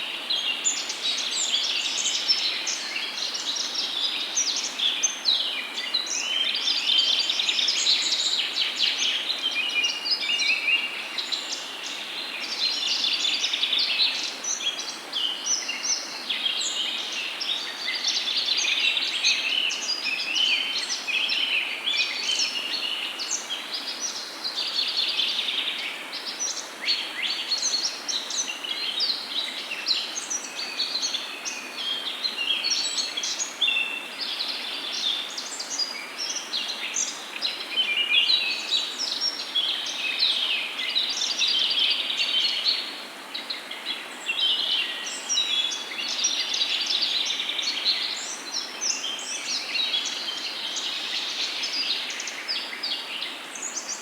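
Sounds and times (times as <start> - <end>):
faint steady hiss: 0.0 - 54.0.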